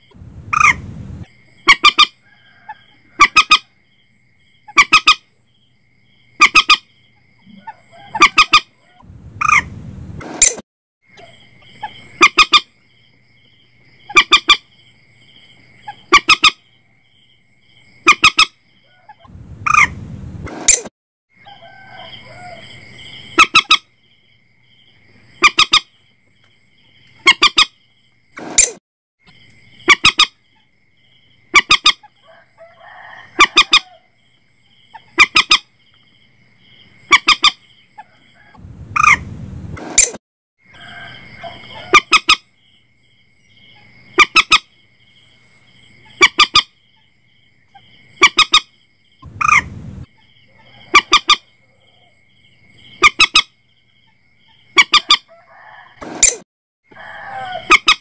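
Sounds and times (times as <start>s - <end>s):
moorhen short sharp calls: 0.5s - 0.8s, 9.4s - 9.7s, 49.3s - 49.7s.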